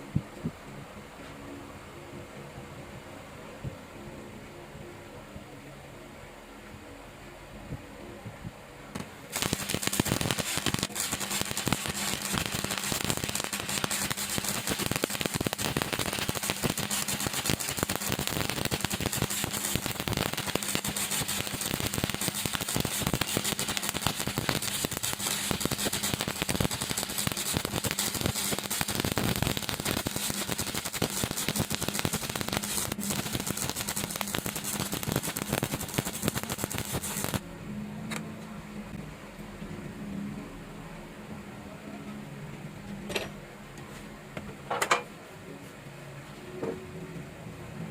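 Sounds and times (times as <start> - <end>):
welding arc crackling: 8.9 - 37.4.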